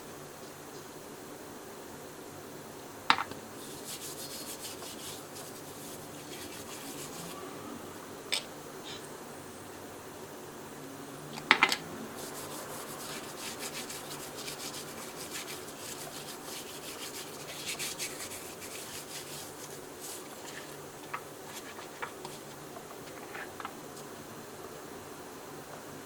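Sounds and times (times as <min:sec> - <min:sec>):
faint steady hum: 0:00.0 - 0:26.0
rubbing and scraping strokes: 0:03.5 - 0:07.5, 0:12.1 - 0:23.7.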